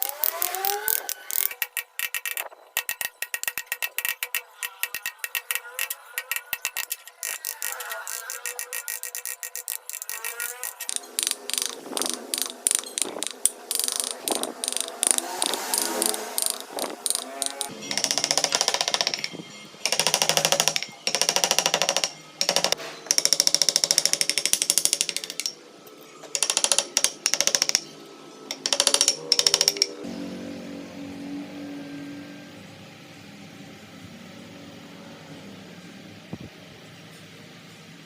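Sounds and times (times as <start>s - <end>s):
chisel scraping wood: 0.0s - 25.6s.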